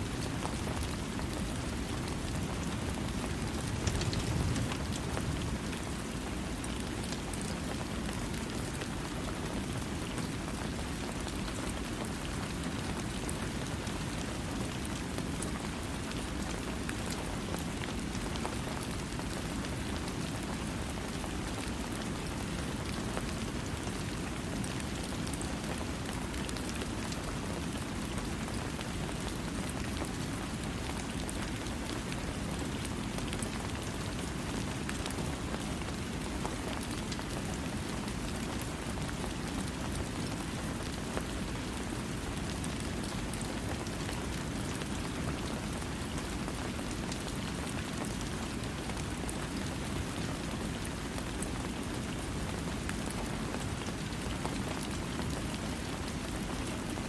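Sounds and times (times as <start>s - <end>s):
steady rain: 0.0s - 57.0s
raindrops ticking: 3.4s - 5.4s.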